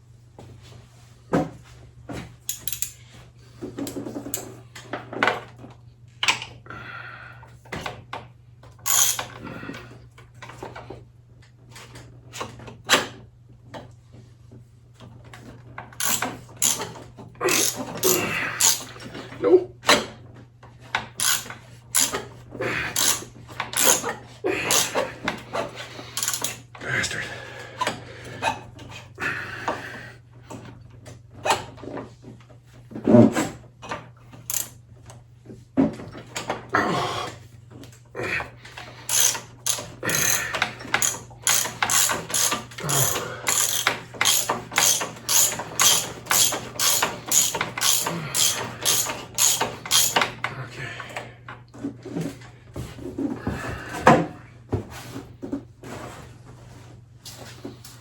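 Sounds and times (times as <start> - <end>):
ratchet wrench clicking: 2.5 - 3.0, 8.9 - 9.3, 16.0 - 18.9, 21.2 - 22.2, 22.9 - 23.2, 23.8 - 24.1, 24.7 - 25.0, 26.2 - 26.6, 34.5 - 34.7, 39.1 - 50.3.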